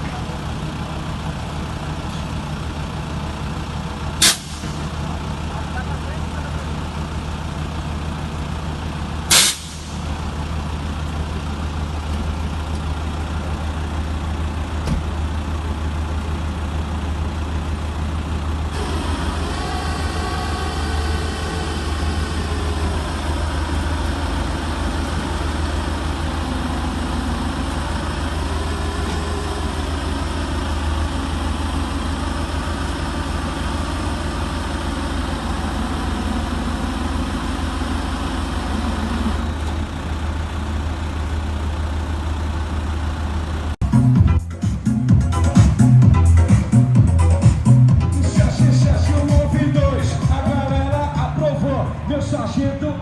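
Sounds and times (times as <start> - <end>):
heavy vehicle engine idling: 0.0 - 53.0
loud air hiss: 4.2 - 4.8, 9.3 - 10.0.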